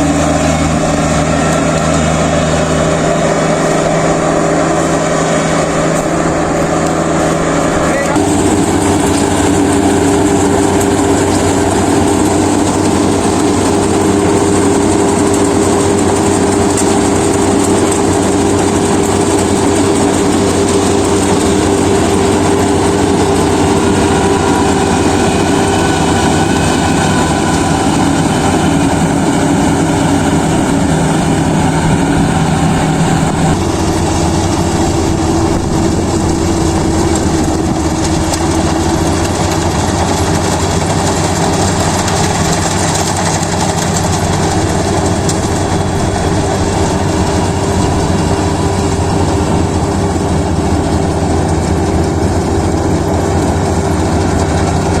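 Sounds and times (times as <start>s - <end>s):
combine harvester drone: 0.0s - 55.0s.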